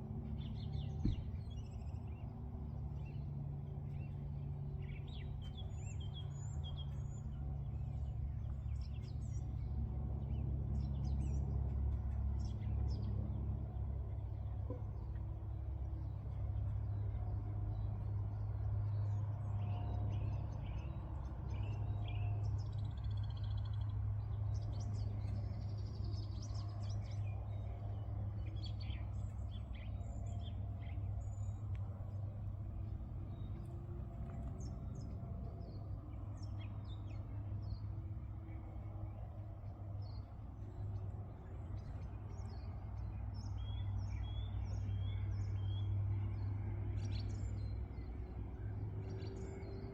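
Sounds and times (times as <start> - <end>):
low background rumble: 0.0 - 49.9
birds chirping: 21.5 - 37.8.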